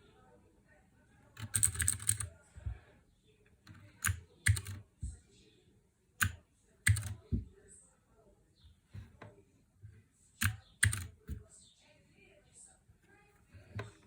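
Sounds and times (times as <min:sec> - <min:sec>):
mechanical keyboard key clicks: 0:01.4 - 0:02.3, 0:04.0 - 0:04.8, 0:06.2 - 0:07.2, 0:10.4 - 0:11.2.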